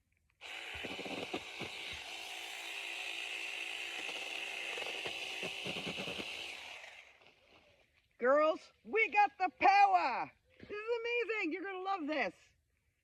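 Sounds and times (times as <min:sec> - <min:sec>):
electric chainsaw whine: 0:00.4 - 0:07.6.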